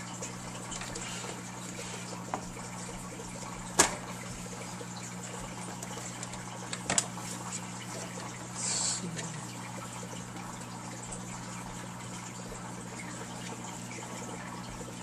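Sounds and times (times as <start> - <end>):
steady hiss and hum: 0.0 - 15.0.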